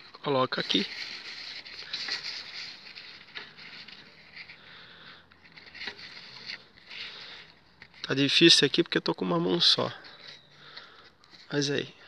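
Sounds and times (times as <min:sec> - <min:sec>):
packing sheet rustling and scraping: 0:00.0 - 0:04.6.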